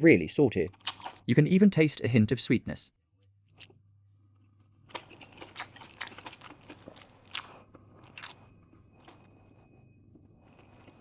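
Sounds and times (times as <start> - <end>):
close-up wet chewing: 0.8 - 1.3, 3.4 - 3.8, 4.9 - 9.3.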